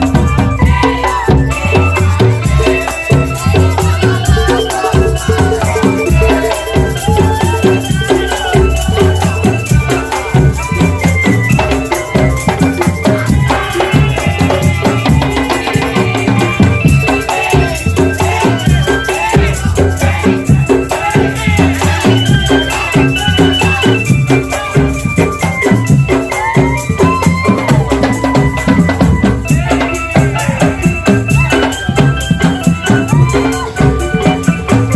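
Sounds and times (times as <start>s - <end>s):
drum band playing: 0.0s - 34.9s
rattling percussion: 0.0s - 34.9s.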